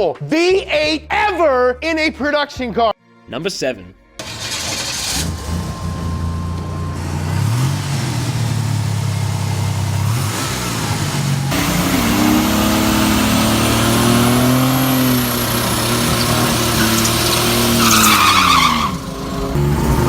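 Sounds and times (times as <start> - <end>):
turbocharged engine revving: 4.2 - 20.0.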